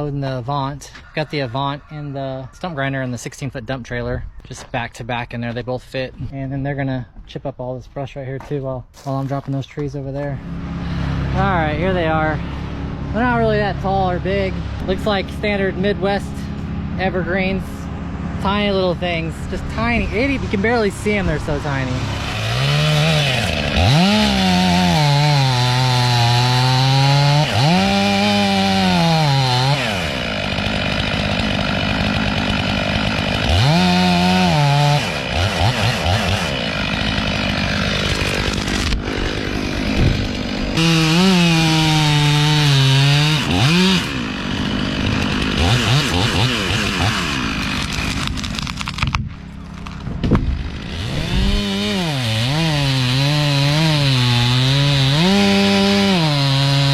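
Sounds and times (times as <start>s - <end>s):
chainsaw cutting wood: 19.6s - 56.9s.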